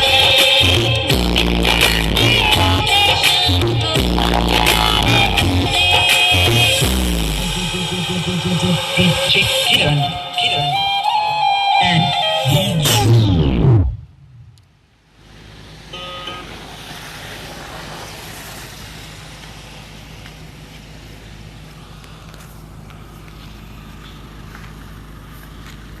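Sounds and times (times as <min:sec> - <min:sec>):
low hum: 0:00.0 - 0:10.5, 0:11.9 - 0:26.0
music over a sound system: 0:00.0 - 0:14.0
background rumble and hiss: 0:13.0 - 0:26.0
brief tone: 0:15.9 - 0:16.6.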